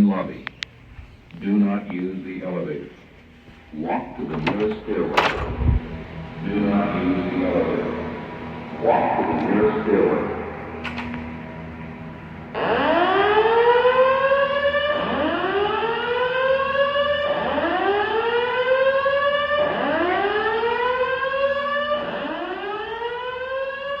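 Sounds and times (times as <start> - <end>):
fire alarm whoop tone: 12.6 - 24.0.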